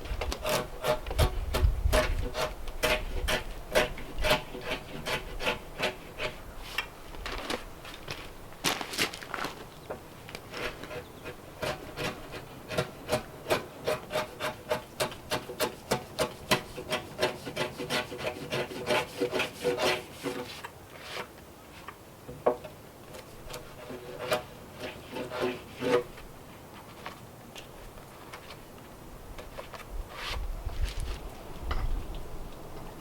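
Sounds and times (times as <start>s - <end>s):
hand tool shaving wood: 0.1s - 6.9s, 10.3s - 21.4s, 23.1s - 26.3s.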